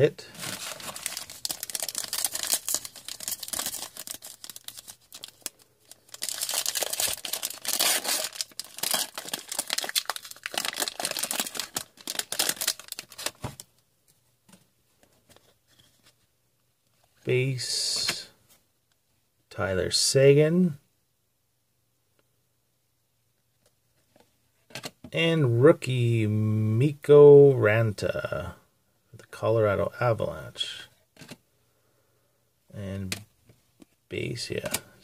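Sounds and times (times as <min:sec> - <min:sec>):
foil wrapper tearing and crinkling: 0:00.4 - 0:13.6.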